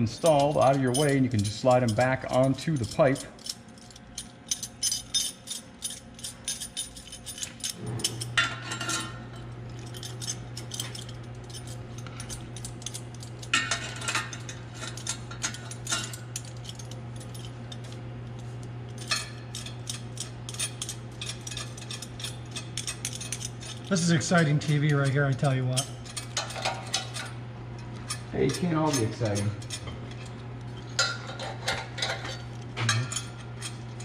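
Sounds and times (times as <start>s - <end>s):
metal pipes clinking and rattling: 0.0s - 34.0s
steady low hum: 0.0s - 34.0s.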